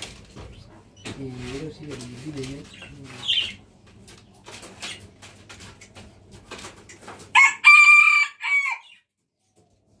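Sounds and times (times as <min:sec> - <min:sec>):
rooster crowing: 0:07.3 - 0:09.0.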